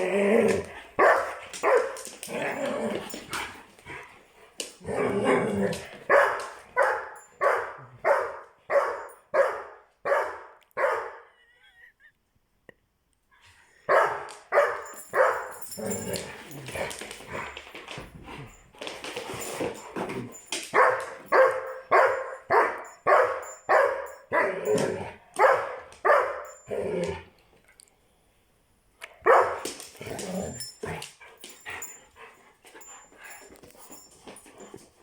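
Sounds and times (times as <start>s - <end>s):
dog barking in play: 1.0s - 2.1s, 6.1s - 11.4s, 13.9s - 15.8s, 20.7s - 26.7s, 29.2s - 29.6s.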